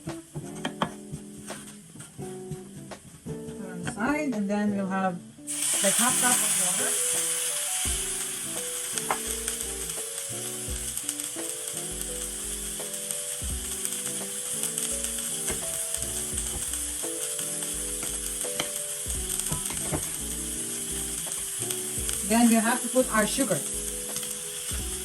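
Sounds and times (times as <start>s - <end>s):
food sizzling in a skillet: 5.4s - 25.0s.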